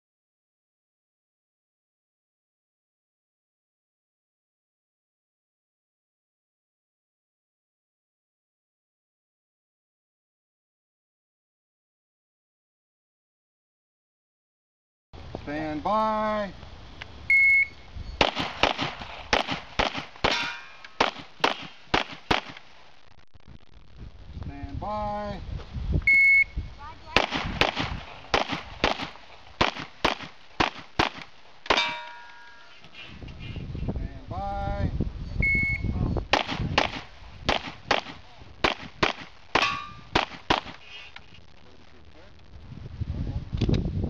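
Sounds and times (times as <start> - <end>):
electronic timer beep: 17.3 - 17.8, 26.1 - 26.6, 35.4 - 36.0
pistol shots: 18.2 - 22.6, 27.2 - 32.1, 36.3 - 40.8
steel targets ringing: 20.3 - 20.9, 31.7 - 32.8, 39.6 - 40.1.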